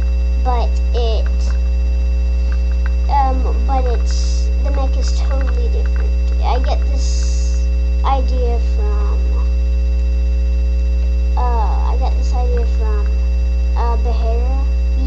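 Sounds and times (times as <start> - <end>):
electrical mains hum: 0.0 - 15.0
high whine: 0.0 - 15.0
faint voices: 3.1 - 9.5.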